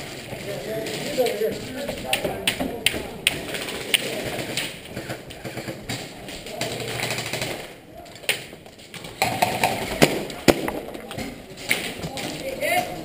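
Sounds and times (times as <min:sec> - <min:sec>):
indoor arena background noise: 0:00.0 - 0:13.0
bbs hitting targets: 0:09.2 - 0:12.4.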